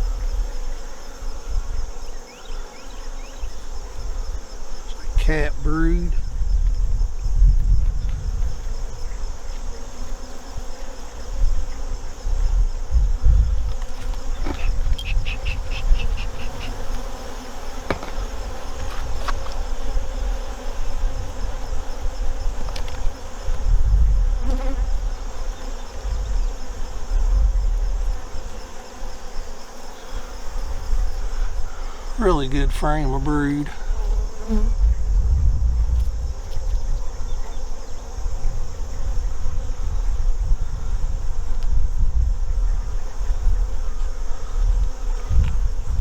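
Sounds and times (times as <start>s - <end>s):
honey bees buzzing: 0.0s - 46.0s
low irregular rumble: 32.2s - 37.2s.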